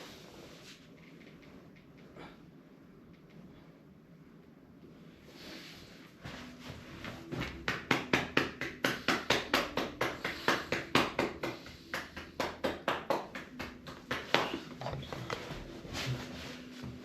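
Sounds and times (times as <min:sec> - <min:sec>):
rhythmic massage slapping strikes: 0:06.2 - 0:17.0.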